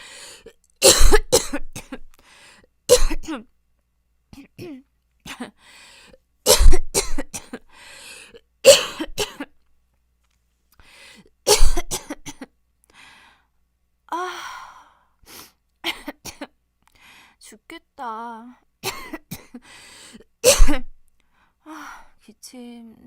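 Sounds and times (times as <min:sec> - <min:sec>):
woman coughing harshly: 0:00.8 - 0:02.1, 0:02.9 - 0:03.4, 0:04.4 - 0:05.6, 0:06.5 - 0:07.7, 0:08.6 - 0:09.6, 0:11.5 - 0:12.5, 0:15.8 - 0:16.6, 0:18.8 - 0:19.6, 0:20.4 - 0:20.9.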